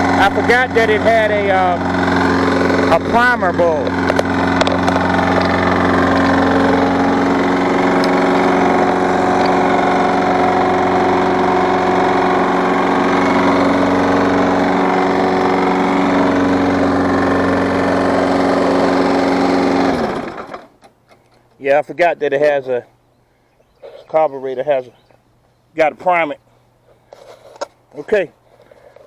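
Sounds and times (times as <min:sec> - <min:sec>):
lawn mower engine running: 0:00.0 - 0:20.8.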